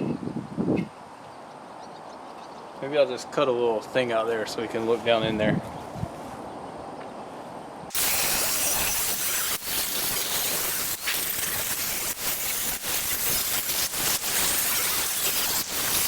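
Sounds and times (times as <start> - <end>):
power tool cutting steel: 7.9 - 16.0.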